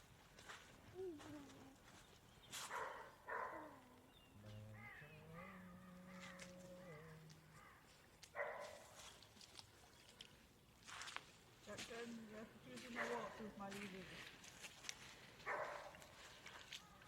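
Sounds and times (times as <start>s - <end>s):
crows cawing: 7.5s - 8.0s.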